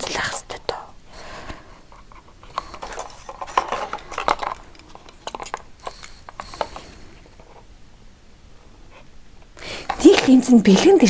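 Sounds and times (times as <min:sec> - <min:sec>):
packaging rustling: 0:01.9 - 0:07.7, 0:09.6 - 0:11.0
plastic packaging clicking: 0:02.2 - 0:06.9.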